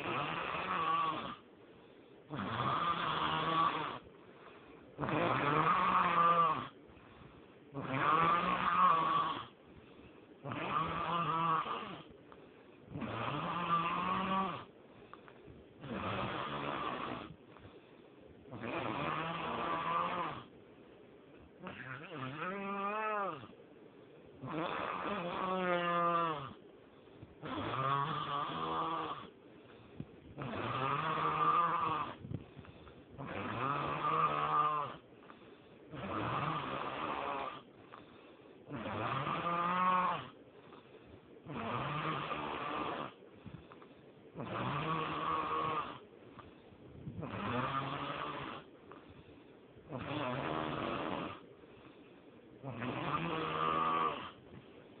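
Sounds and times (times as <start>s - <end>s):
person snoring: 0.0s - 1.4s, 2.3s - 4.1s, 5.0s - 6.8s, 7.7s - 9.6s, 10.4s - 12.1s, 12.9s - 14.8s, 15.8s - 17.4s, 18.5s - 20.5s, 21.6s - 23.6s, 24.4s - 26.6s, 27.4s - 29.4s, 30.3s - 32.2s, 32.8s - 35.1s, 35.9s - 40.4s, 41.4s - 43.8s, 44.4s - 46.0s, 47.1s - 49.0s, 49.9s - 51.5s, 52.6s - 54.4s
quiet breaths: 0.0s - 55.0s.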